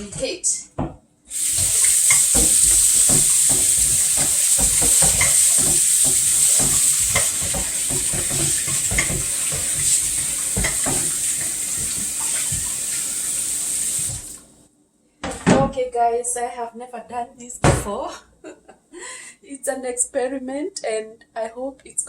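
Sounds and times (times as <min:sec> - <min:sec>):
food sizzling in a hot pan: 0:01.3 - 0:14.4.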